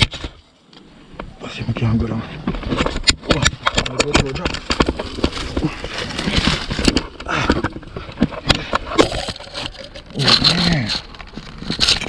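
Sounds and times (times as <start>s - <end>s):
branches and leaves crackling: 2.5s - 12.0s.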